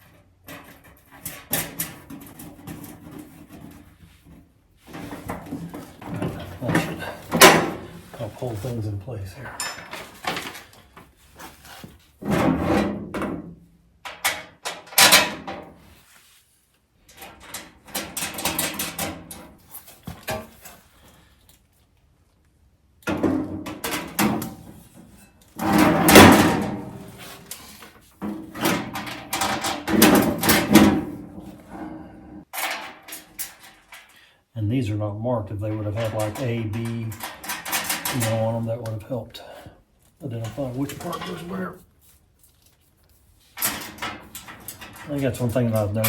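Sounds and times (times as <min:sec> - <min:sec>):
metal panels clanking and rattling: 0:00.0 - 0:03.9, 0:04.9 - 0:08.7, 0:12.2 - 0:13.5, 0:14.1 - 0:15.8, 0:17.1 - 0:19.6, 0:23.0 - 0:27.6, 0:28.2 - 0:31.6, 0:32.5 - 0:34.1, 0:35.6 - 0:38.9, 0:40.3 - 0:41.7, 0:43.6 - 0:46.0.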